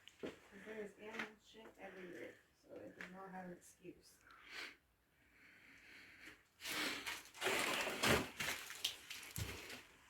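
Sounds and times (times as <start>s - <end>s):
crunching and rustling: 6.6s - 10.0s.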